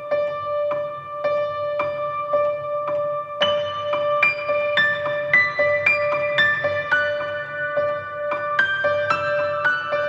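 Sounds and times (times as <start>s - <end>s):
piano-like melody: 0.0s - 10.0s.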